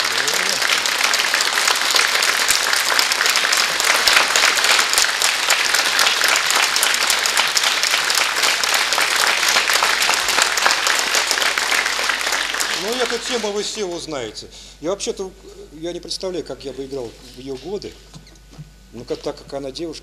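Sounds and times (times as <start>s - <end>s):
audience applauding: 0.0s - 13.9s.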